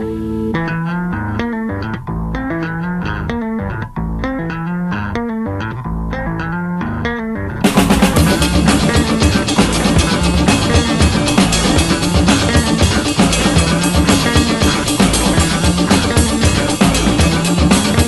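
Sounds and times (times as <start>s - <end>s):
bass line: 0.0s - 18.0s
picked guitar notes: 0.0s - 18.0s
full band with drums: 7.6s - 18.0s.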